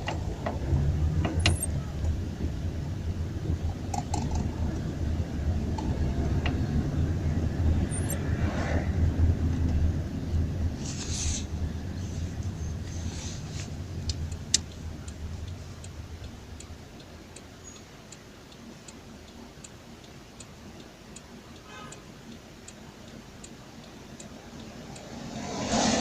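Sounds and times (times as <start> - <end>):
turn signal relay clicking: 1.2 - 2.2, 13.7 - 25.1
car engine idling: 11.4 - 25.3.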